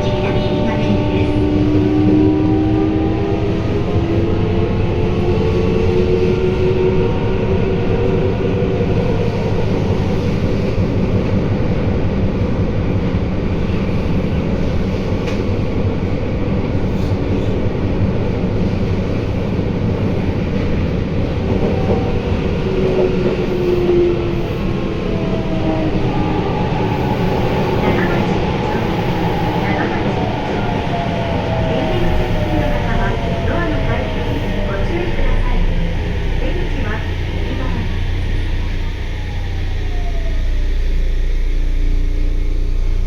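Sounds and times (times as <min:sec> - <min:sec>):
train wheels rumbling on rail: 0:00.0 - 0:43.0.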